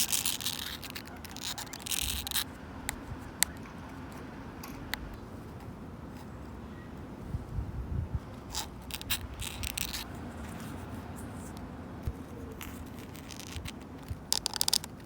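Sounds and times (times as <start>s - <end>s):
fingernails scratching wood: 0.0s - 3.6s, 8.3s - 15.0s.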